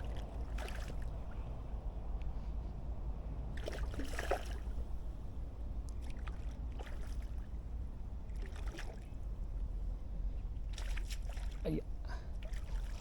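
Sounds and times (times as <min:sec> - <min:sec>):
water sloshing and trickling: 0:00.0 - 0:02.2, 0:03.4 - 0:13.0
steady low rumble: 0:00.0 - 0:13.0.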